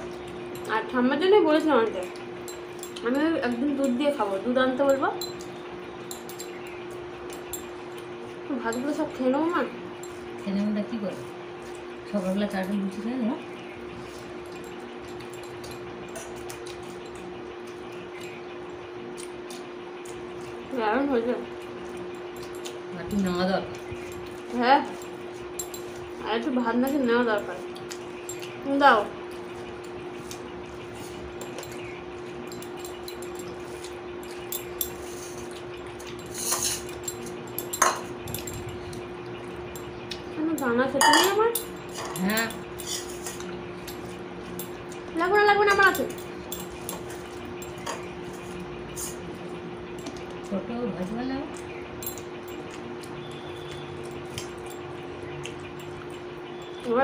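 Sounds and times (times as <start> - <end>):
soft eating clicks: 0.0 - 11.0, 11.6 - 57.0
steady hum: 0.0 - 57.0
dishes and cutlery clinking: 2.0 - 8.0, 14.1 - 17.3, 22.2 - 28.6, 31.0 - 39.0, 39.6 - 45.0, 45.6 - 49.2, 51.7 - 54.9
dishes clattering: 34.3 - 38.7, 41.0 - 44.0.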